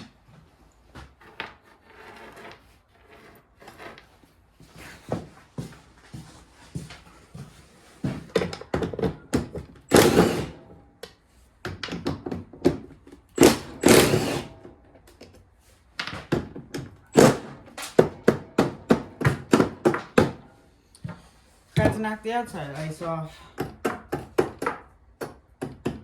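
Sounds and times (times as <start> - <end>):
scraping or rattling: 1.2 - 4.2.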